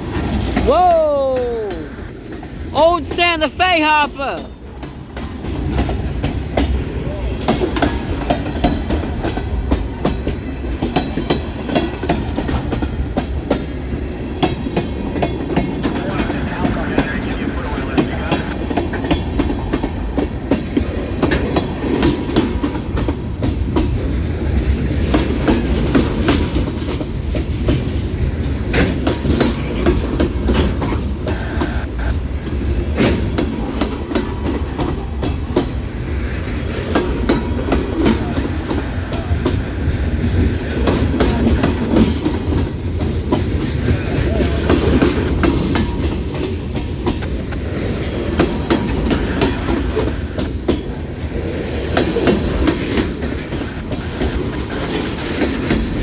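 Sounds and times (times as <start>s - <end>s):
freight train rumbling by: 0.0s - 56.0s
rattling train cars: 0.0s - 56.0s
wheels clacking over rail joints: 18.7s - 31.1s, 33.0s - 56.0s.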